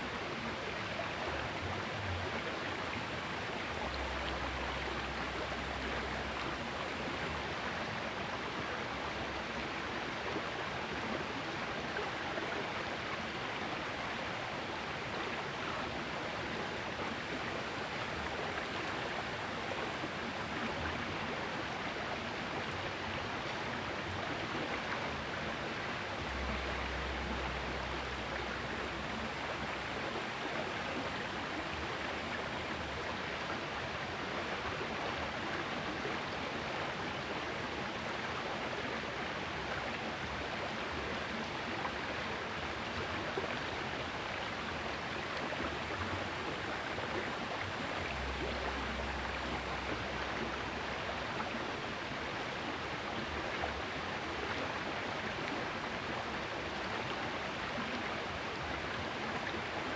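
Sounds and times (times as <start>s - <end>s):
river water rushing: 21.5s - 38.5s, 39.3s - 59.9s.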